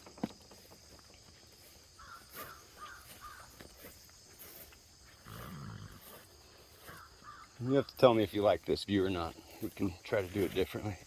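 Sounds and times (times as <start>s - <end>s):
harsh caw-like bird calls: 1.8s - 3.8s, 6.7s - 7.7s.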